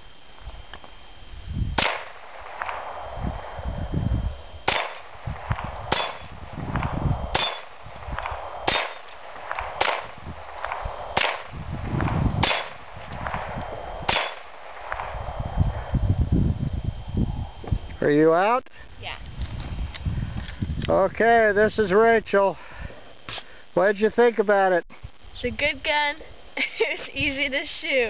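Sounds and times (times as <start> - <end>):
pistol shots with metallic ring: 4.7 - 5.1, 5.9 - 6.3, 7.3 - 7.8, 8.7 - 10.1, 12.4 - 12.8, 14.1 - 14.6.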